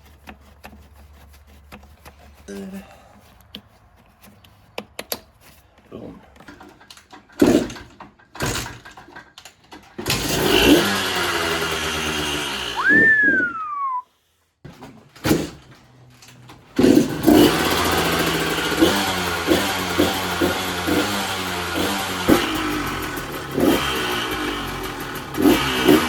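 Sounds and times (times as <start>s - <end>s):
dirt bike engine running: 10.0s - 13.2s, 16.8s - 26.0s.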